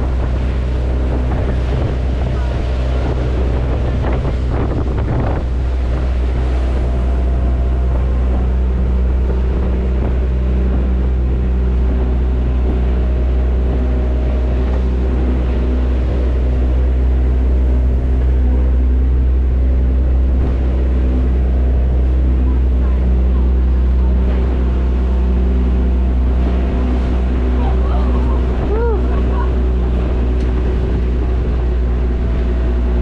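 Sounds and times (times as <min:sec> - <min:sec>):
boat engine droning: 0:00.0 - 0:33.0
water noise around hull: 0:00.0 - 0:33.0
wind buffeting microphone: 0:00.0 - 0:33.0.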